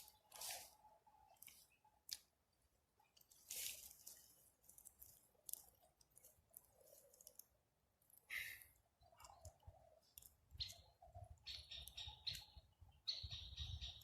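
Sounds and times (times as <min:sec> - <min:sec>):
soft rustles: 0:03.2 - 0:07.4.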